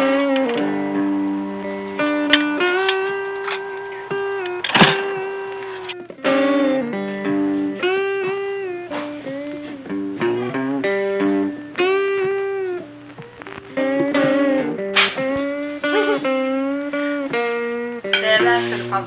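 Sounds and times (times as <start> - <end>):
plucked guitar tune: 0.0 - 19.0.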